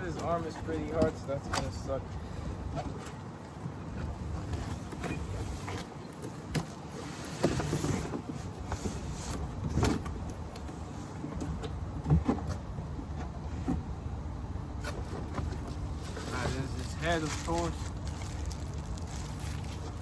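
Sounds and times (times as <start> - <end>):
steady low rumble: 9.5 - 20.0
cardboard rustling: 14.8 - 20.0.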